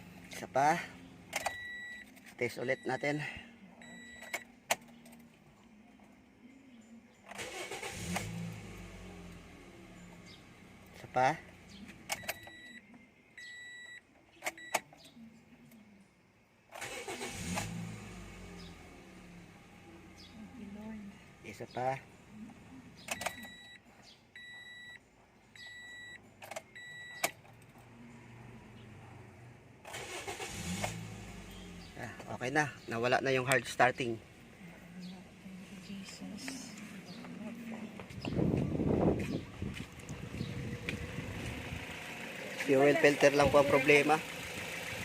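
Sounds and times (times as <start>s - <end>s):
car engine starting and running: 0.0s - 5.3s, 7.2s - 12.8s, 16.7s - 25.0s, 25.6s - 45.0s
car warning beeper: 0.8s - 4.5s, 12.0s - 14.9s, 23.0s - 23.8s, 24.4s - 25.0s, 25.6s - 27.4s, 30.0s - 32.8s.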